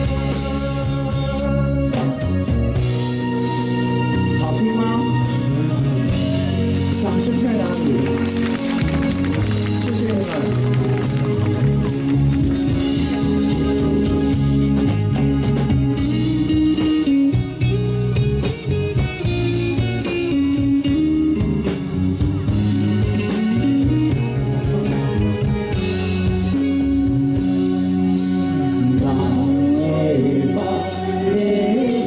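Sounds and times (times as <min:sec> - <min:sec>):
bass guitar: 0:00.0 - 0:32.0
electric guitar lead: 0:00.0 - 0:32.0
drum kit beat: 0:05.6 - 0:29.2.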